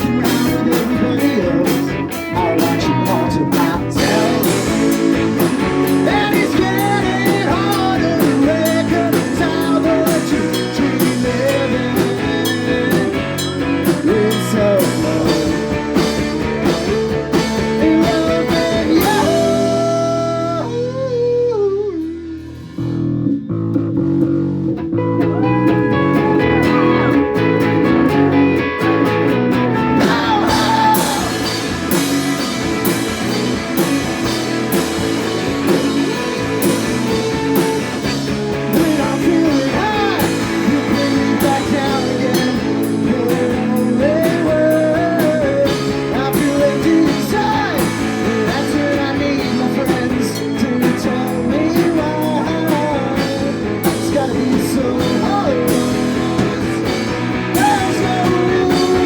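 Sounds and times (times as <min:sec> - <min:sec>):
drums steady beat: 0:00.0 - 0:21.0, 0:25.6 - 0:59.0
person singing: 0:00.0 - 0:23.0, 0:29.5 - 0:59.0
bass guitar: 0:00.0 - 0:59.0
electric guitar: 0:00.0 - 0:59.0.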